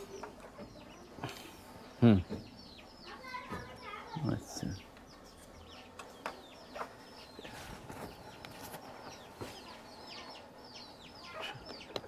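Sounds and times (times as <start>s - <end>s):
birds chirping: 0.0s - 12.0s.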